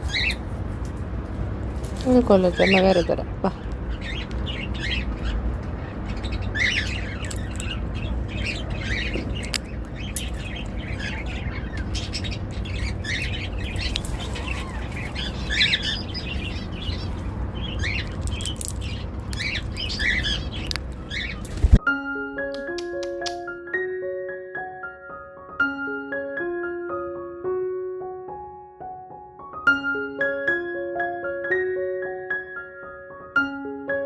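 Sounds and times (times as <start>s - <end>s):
parrot chirps and squawks: 0.0s - 0.4s, 10.4s - 21.4s
steady low hum: 0.0s - 21.8s
parrot cracking seeds: 7.2s - 7.8s, 18.0s - 19.8s, 20.6s - 21.6s.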